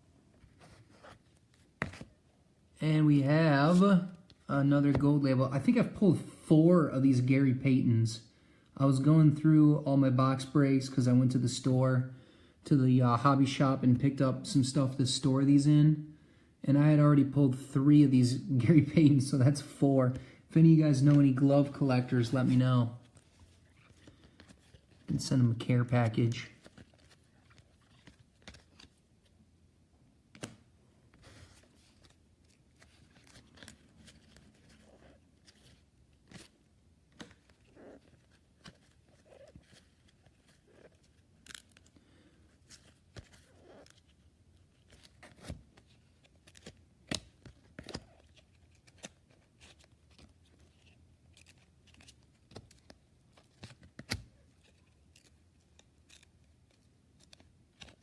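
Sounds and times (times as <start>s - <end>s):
cards scraping against cards: 42.6s - 58.0s.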